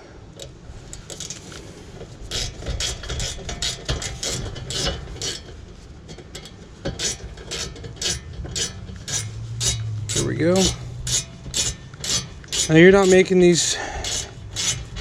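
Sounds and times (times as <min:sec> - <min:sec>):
hand ratchet clicking: 0:06.3 - 0:15.0.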